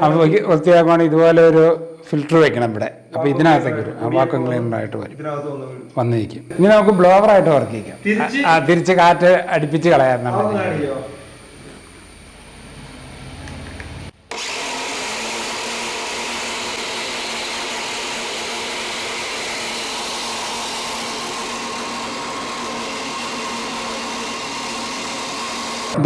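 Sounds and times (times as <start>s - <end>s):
motor hum: 6.0s - 26.0s
blower rush of air: 6.5s - 26.0s.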